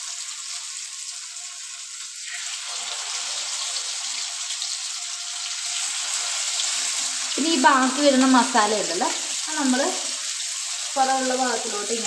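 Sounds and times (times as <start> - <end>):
fish sizzling in a frying pan: 0.0 - 12.0.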